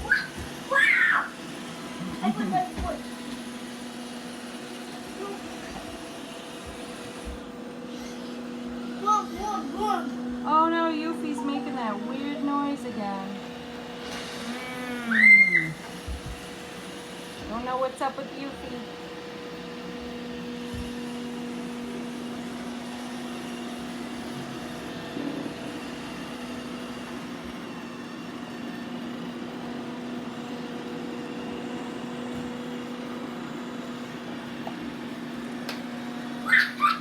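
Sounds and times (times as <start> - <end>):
robot vacuums whirring: 0.0 - 36.9
robot vacuum making weird noise: 14.1 - 16.0.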